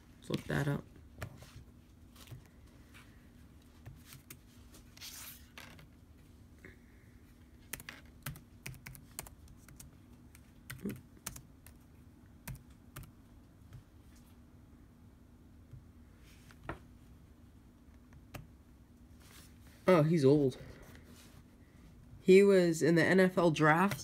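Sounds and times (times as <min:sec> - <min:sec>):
faint keyboard typing: 0:07.4 - 0:14.3, 0:17.8 - 0:18.5.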